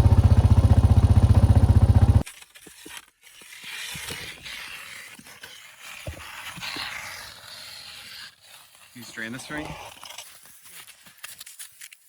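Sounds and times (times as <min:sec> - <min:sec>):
small gas engine running: 0:00.0 - 0:02.2
ice slush scraping crunch: 0:02.2 - 0:12.0.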